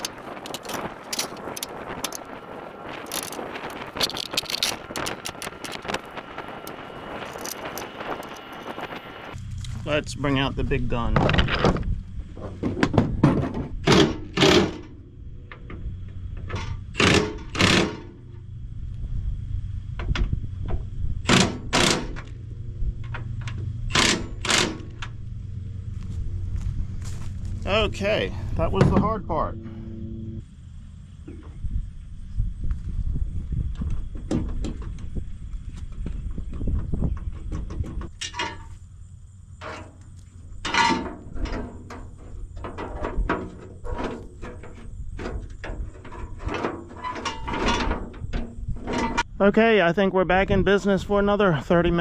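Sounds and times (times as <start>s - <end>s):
hand tools clicking on metal: 0.0s - 8.8s
low engine hum: 0.0s - 13.9s, 18.1s - 42.7s
impact wrench bursts: 23.9s - 25.0s.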